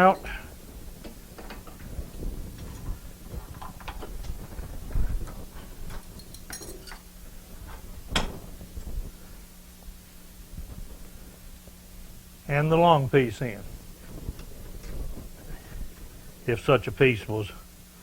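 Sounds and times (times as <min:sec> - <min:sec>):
faint steady hum: 0:00.0 - 0:18.0
metal parts clinking: 0:06.2 - 0:07.0.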